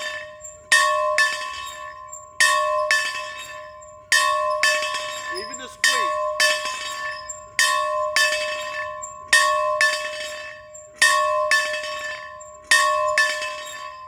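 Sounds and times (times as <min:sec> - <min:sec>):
large bell ringing: 0:00.0 - 0:10.4.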